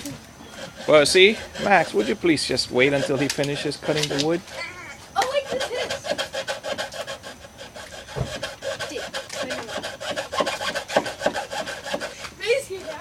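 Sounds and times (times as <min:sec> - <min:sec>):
handsaw cutting wood: 0:00.0 - 0:13.0
knock: 0:08.1 - 0:08.4.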